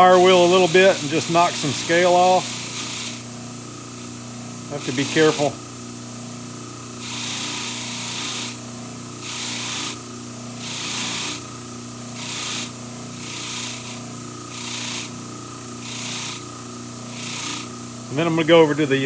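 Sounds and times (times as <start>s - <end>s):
wire wheel scrubbing steel: 0.0s - 3.2s, 4.7s - 5.6s, 7.0s - 8.6s, 9.2s - 10.0s, 10.6s - 11.5s, 12.1s - 18.6s
motor humming: 0.0s - 19.0s.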